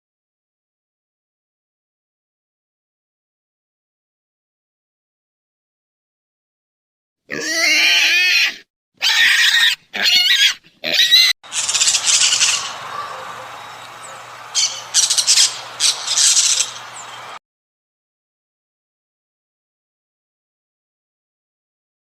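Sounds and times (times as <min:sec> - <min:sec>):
shrill squawks: 0:07.5 - 0:17.4
long wavering animal call: 0:11.5 - 0:17.4.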